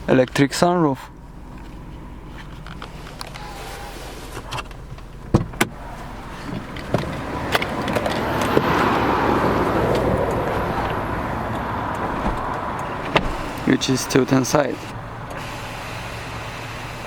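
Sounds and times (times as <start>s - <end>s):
sunroof motor whirring: 9.6s - 14.1s.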